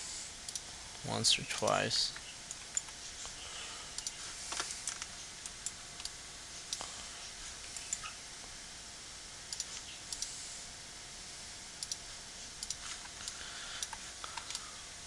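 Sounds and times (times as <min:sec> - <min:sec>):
faint steady hiss: 0:00.0 - 0:15.0
computer mouse clicking: 0:04.0 - 0:06.1, 0:11.8 - 0:12.0, 0:12.6 - 0:14.6.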